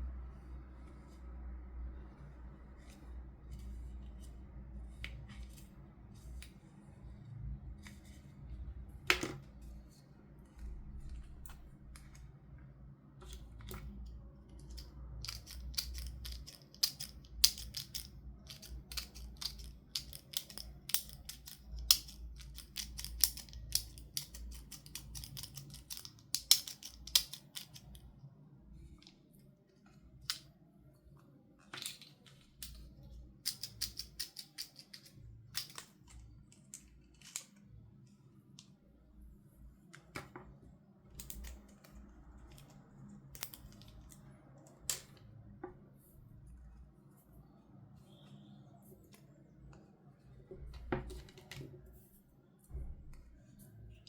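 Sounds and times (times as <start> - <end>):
plastic toy packaging clicks and snips: 14.7 - 28.0.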